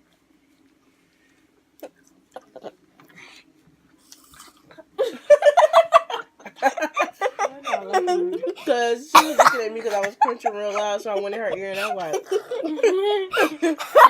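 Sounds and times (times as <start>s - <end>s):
soft chewing and crunching: 0.0s - 5.0s.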